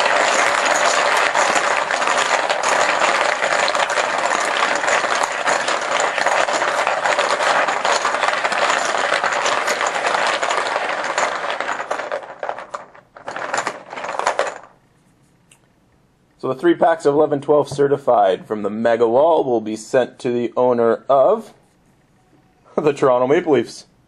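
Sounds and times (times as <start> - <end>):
plastic poker chips clattering: 0.0 - 14.8.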